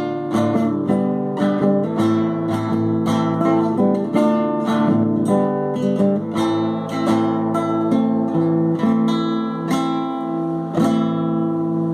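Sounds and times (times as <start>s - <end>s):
acoustic guitar chords: 0.0s - 11.9s.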